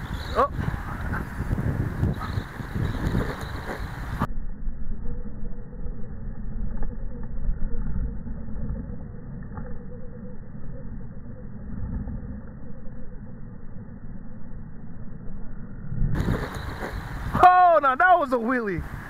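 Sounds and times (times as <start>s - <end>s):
wind buffeting microphone: 0.0s - 4.3s, 16.1s - 19.0s.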